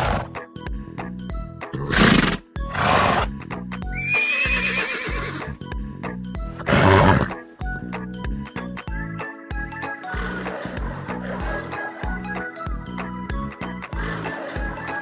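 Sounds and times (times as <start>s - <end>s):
horse whinnying: 1.8s - 3.3s, 4.0s - 5.6s, 6.6s - 7.4s
background music with steady beat: 5.1s - 15.0s.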